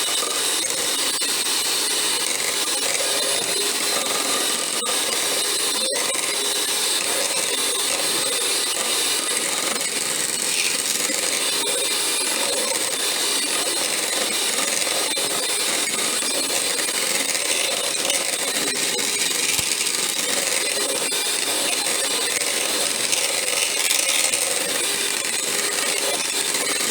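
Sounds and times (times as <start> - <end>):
electric hand mixer whipping: 6.8 - 26.9.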